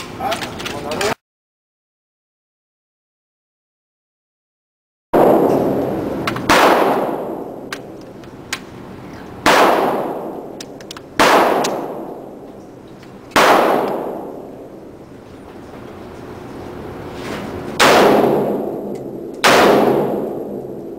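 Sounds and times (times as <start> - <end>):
echoing gunshots: 5.2 - 8.0, 9.4 - 15.0, 17.8 - 20.9.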